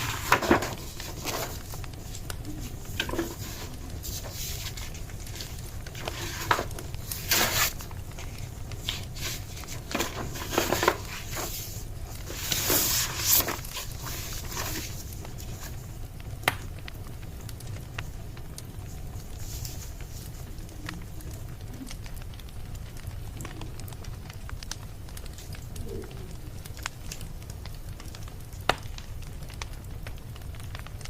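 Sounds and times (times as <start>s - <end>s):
steady low hum: 0.0s - 31.0s
wood fire crackling and popping: 0.0s - 31.0s.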